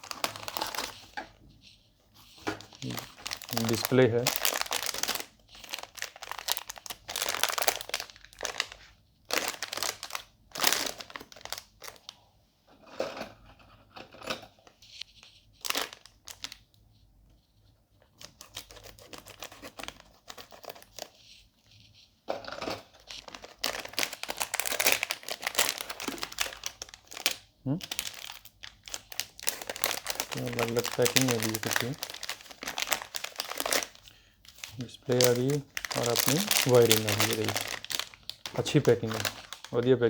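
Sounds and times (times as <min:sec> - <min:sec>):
packaging tearing: 0:00.0 - 0:01.1, 0:02.6 - 0:12.1, 0:15.6 - 0:16.6, 0:18.2 - 0:21.2, 0:22.9 - 0:39.9
packaging crinkling and rustling: 0:00.0 - 0:12.2, 0:14.1 - 0:16.7, 0:18.0 - 0:21.8, 0:22.4 - 0:40.0.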